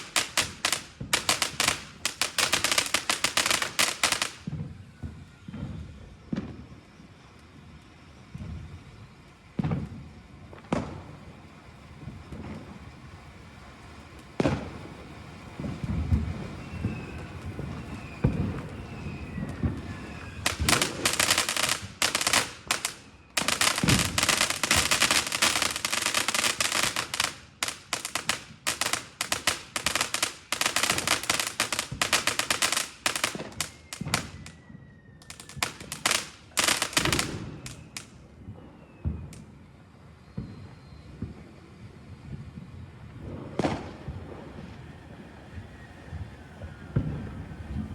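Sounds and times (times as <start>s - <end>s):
fireworks crackling: 0.0s - 47.9s
firework launch thumps: 15.8s - 34.5s.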